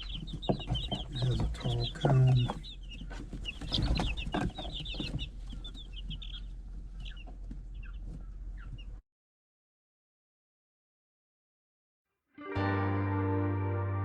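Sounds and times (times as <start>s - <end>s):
chicks peeping: 0.0s - 9.0s.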